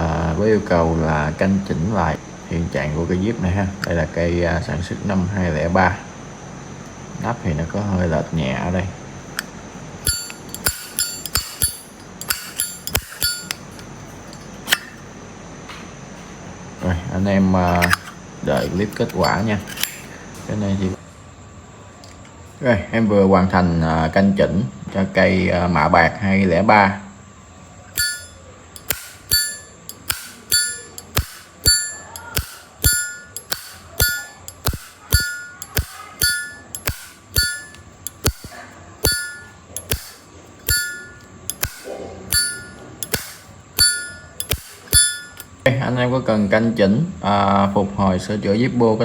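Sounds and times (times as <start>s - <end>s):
lighter lid clinking open and shut: 10.1s - 15.0s, 17.7s - 20.1s, 28.0s - 45.5s
lighter lid snapping shut: 17.7s - 20.0s.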